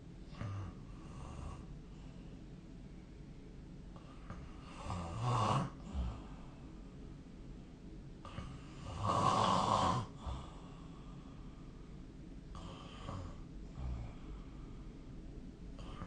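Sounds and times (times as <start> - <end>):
person snoring: 4.3 - 6.4, 8.2 - 10.7, 12.5 - 14.5, 15.8 - 16.0.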